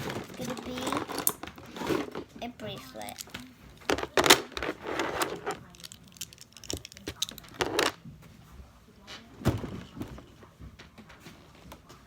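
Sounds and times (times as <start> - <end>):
bracelet clicking and rattling: 3.0 - 8.0.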